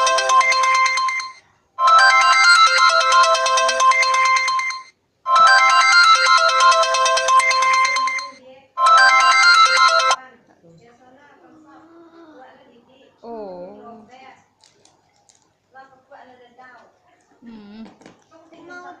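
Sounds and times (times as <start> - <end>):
electronic phone ringtone: 0.0 - 10.2.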